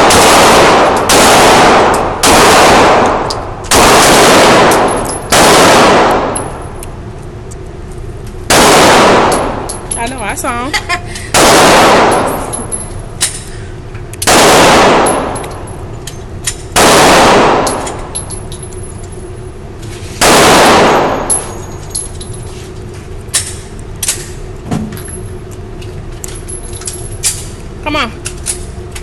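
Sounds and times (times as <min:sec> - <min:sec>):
handgun shots echoing: 0:00.0 - 0:06.6, 0:14.2 - 0:15.7.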